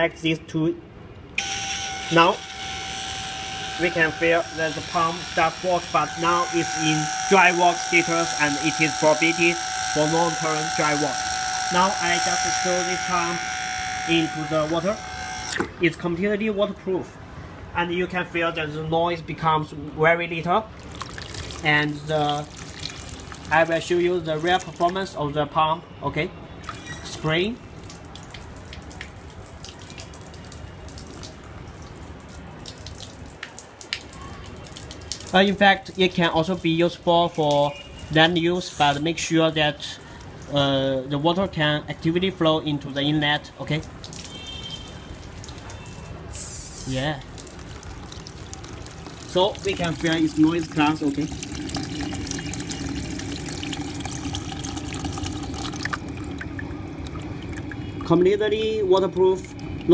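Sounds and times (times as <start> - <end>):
water dripping: 2.3 - 15.8, 20.8 - 25.0, 26.6 - 36.0, 43.7 - 59.9
water spraying and splashing: 43.8 - 59.9.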